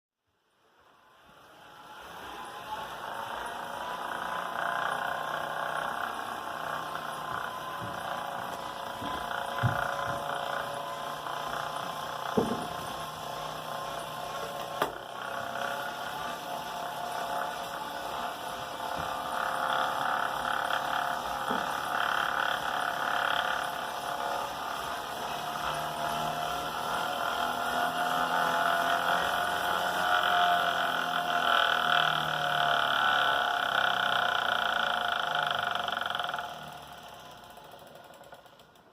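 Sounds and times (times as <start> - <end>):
tyre on roller whine: 1.3 - 38.7
sharp knocks: 9.0 - 10.5, 12.3 - 12.9.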